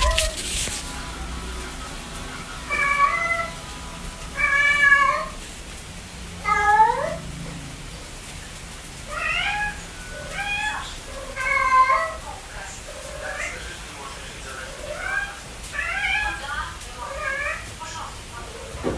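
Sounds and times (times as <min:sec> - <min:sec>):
cat meowing: 0:00.0 - 0:00.5, 0:02.7 - 0:03.6, 0:04.4 - 0:05.4, 0:06.4 - 0:07.3, 0:09.1 - 0:12.2, 0:14.7 - 0:16.5, 0:17.1 - 0:17.8.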